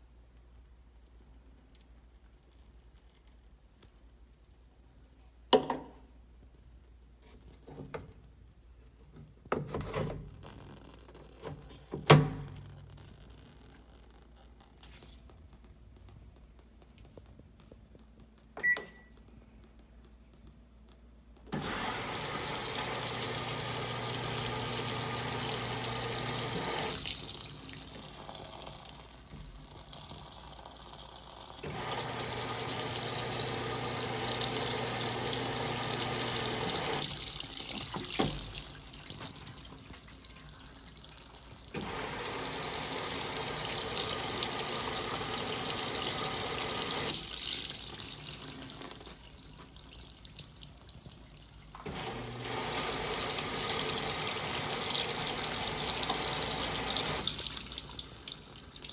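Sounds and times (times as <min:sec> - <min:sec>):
water rushing into washing machine: 0:21.5 - 0:50.3, 0:51.7 - 0:58.9.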